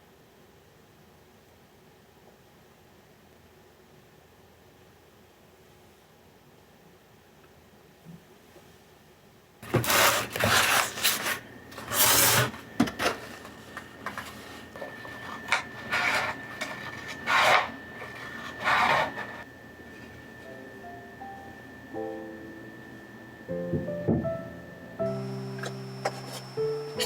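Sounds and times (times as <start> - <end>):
rasping rubbing strokes: 9.6 - 19.4
thin high tone: 14.1 - 27.0.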